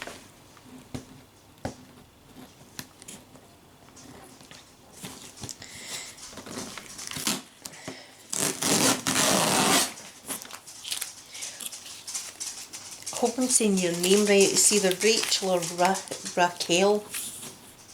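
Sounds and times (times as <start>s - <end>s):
cardboard tearing: 6.4s - 7.6s, 8.3s - 11.1s.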